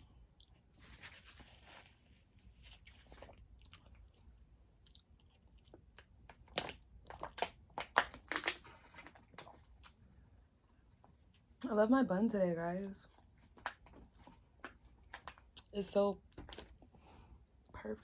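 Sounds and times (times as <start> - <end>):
wet chewing: 2.8 - 7.4.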